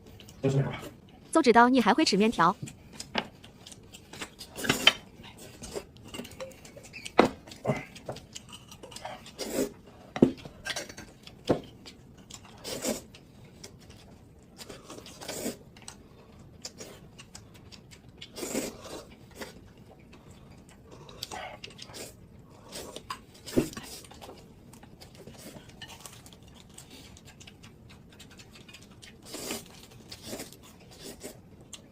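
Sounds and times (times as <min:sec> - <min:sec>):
noisy eating of noodles: 0:02.6 - 0:31.9.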